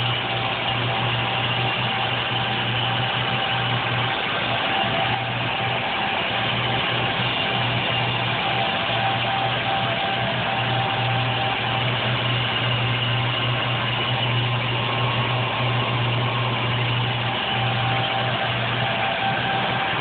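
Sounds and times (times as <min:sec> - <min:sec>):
boat engine idling: 0:00.0 - 0:20.0.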